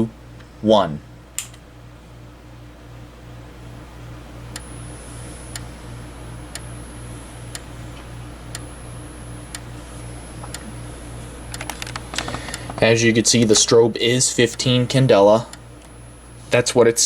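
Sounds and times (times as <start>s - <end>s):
strobe flash clicks: 4.5s - 4.8s, 5.4s - 5.7s, 6.5s - 6.8s, 7.5s - 7.7s, 8.5s - 8.8s, 9.5s - 9.7s.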